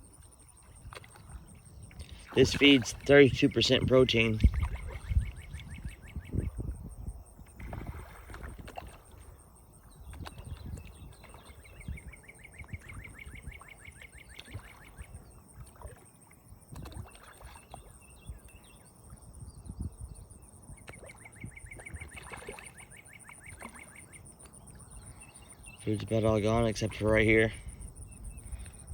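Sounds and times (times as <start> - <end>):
wind on microphone: 0.0 - 13.8, 16.7 - 22.6, 24.8 - 28.9
insects chirping: 0.0 - 28.9
fish splashing at water surface: 7.6 - 9.3, 16.7 - 17.9, 21.8 - 24.0.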